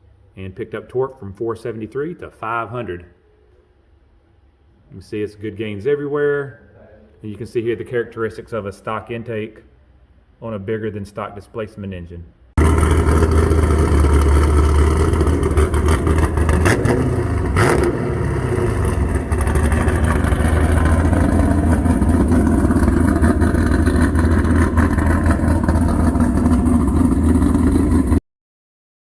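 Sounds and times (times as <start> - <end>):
car engine idling loudly: 12.6 - 28.2.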